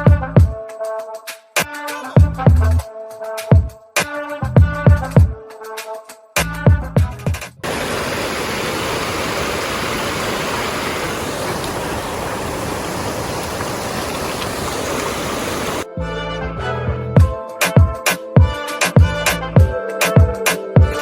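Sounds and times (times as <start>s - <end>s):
music: 0.0s - 7.6s, 15.8s - 21.0s
rushing stream water: 7.6s - 15.9s.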